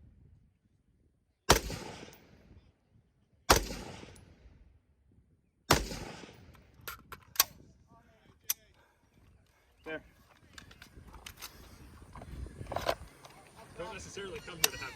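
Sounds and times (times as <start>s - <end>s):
gunshots echoing: 1.5s - 2.4s, 3.5s - 4.3s, 5.7s - 6.6s.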